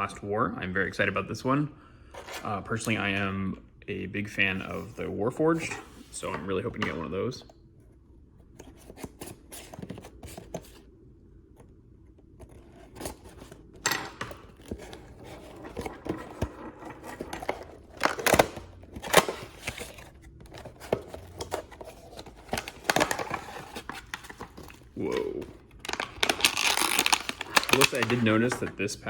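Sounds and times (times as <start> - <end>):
packaging rustling and tearing: 14.4 - 28.8.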